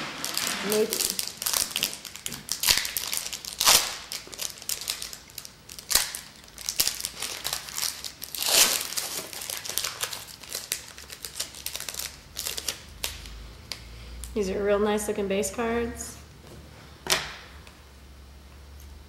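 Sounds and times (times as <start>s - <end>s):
loud ripping: 0.0s - 13.3s
packaging crinkling and tearing: 0.0s - 13.8s.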